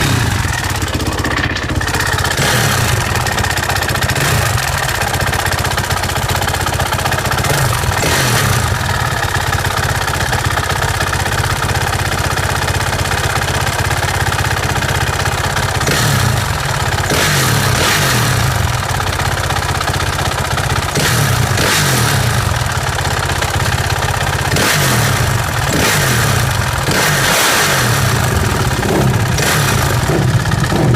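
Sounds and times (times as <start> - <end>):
dirt bike engine revving: 0.0 - 5.6, 7.2 - 9.5, 15.7 - 19.0, 20.9 - 30.9
engine ticking: 0.0 - 30.9.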